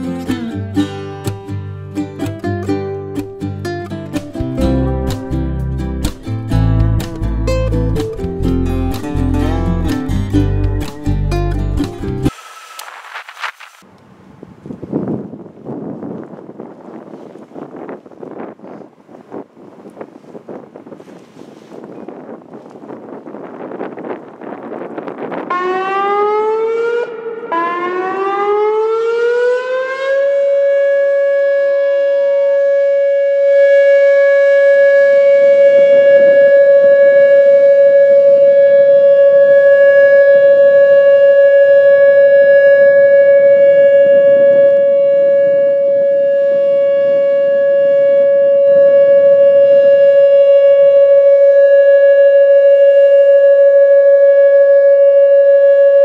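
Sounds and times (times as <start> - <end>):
electronic siren: 25.2 - 56.0.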